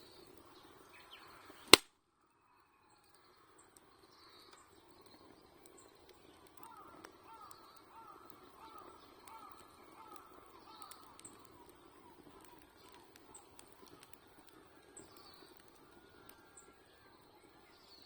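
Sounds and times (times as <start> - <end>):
crackling wood fire: 0.0 - 1.9, 3.0 - 18.0
birds calling: 6.6 - 14.2.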